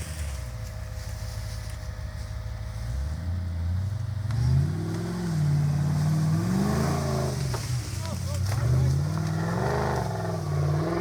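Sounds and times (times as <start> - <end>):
engine revving hard: 4.4 - 7.8, 8.4 - 11.0.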